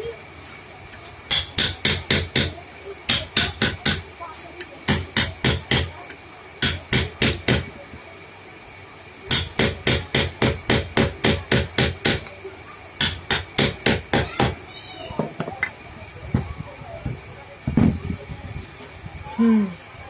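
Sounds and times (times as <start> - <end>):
hammer blows: 1.3 - 4.1, 9.3 - 12.4.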